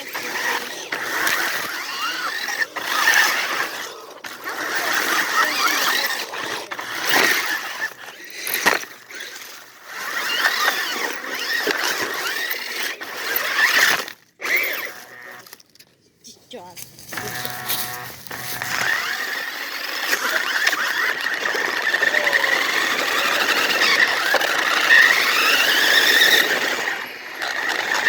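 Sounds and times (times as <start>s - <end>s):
toy car motors whining: 0.0s - 15.9s, 16.5s - 28.0s
gritty rattling: 16.8s - 28.0s.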